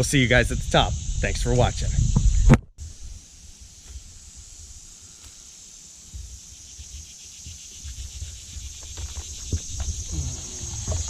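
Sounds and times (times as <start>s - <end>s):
wind rumbling on microphone: 0.0s - 3.2s, 6.1s - 11.0s
insects buzzing: 0.0s - 11.0s.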